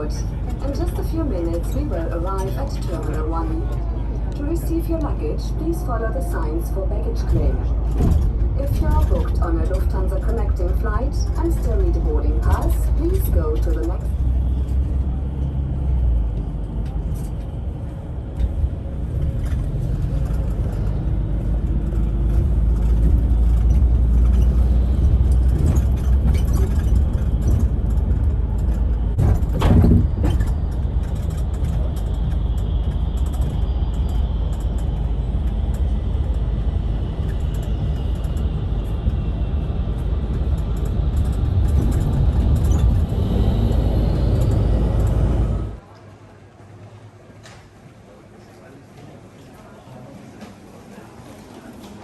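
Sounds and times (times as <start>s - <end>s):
vehicle interior rumble: 0.0s - 45.8s.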